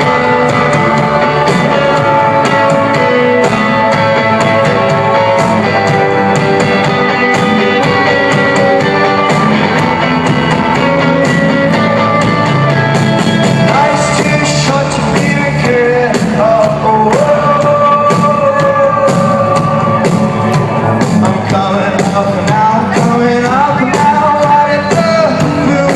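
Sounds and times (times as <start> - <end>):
drums keeping a beat: 0.0 - 25.9
electric guitars: 0.0 - 25.9
person singing: 13.5 - 25.9.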